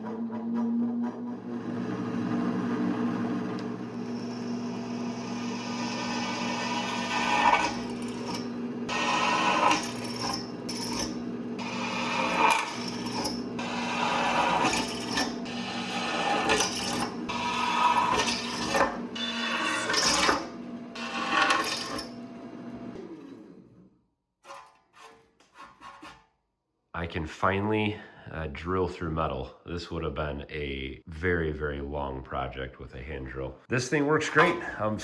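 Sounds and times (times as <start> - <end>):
drill press motor humming: 0.9 - 23.9
drill bit cutting steel: 3.5 - 22.2.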